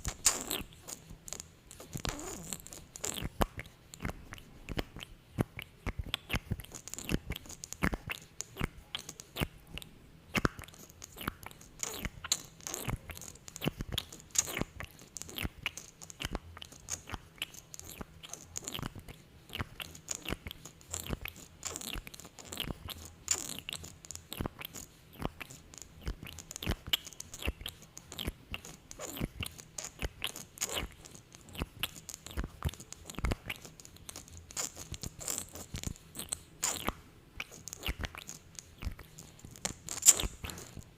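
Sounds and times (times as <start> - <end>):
sticky lip smacking: 0.0 - 40.9.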